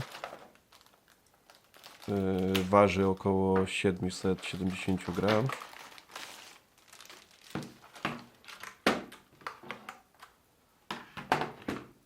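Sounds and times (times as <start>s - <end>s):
packaging crinkling: 0.0s - 8.8s.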